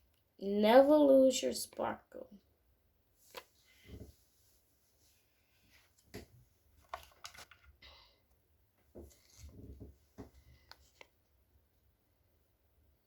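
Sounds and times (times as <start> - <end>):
sticker rustling: 6.8 - 7.7.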